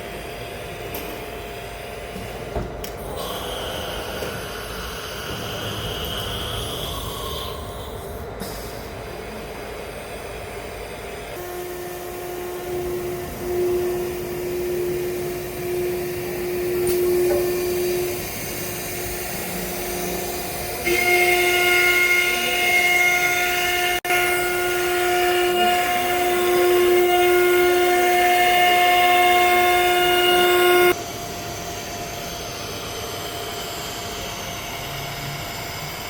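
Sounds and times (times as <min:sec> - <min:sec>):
strong steady whine: 0:00.0 - 0:36.0
higher whine: 0:00.8 - 0:36.0
cnc router motor whine: 0:08.9 - 0:36.0.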